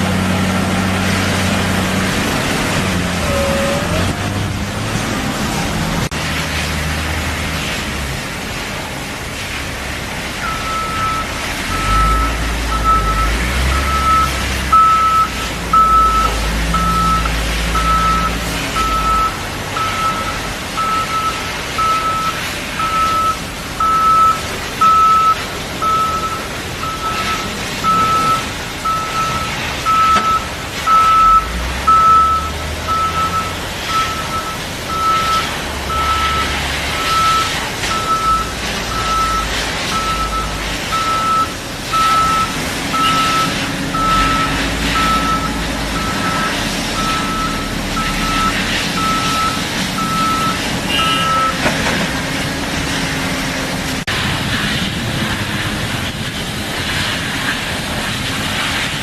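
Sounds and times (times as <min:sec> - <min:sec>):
diesel engine rumble: 0:00.0 - 0:59.0
reversing alarm beeping: 0:10.4 - 0:51.7.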